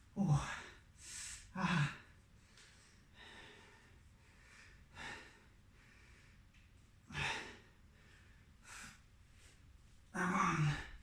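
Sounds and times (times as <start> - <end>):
man breathing hard: 0.3 - 9.1.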